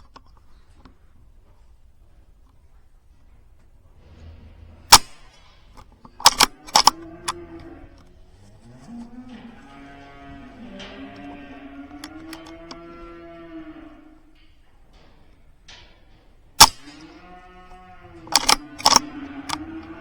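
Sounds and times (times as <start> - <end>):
sharp clicks and knocks: 0.0 - 1.8, 2.4 - 13.1, 14.3 - 20.0
cattle calling: 2.6 - 20.0
air rifle shot crack: 16.6 - 17.0.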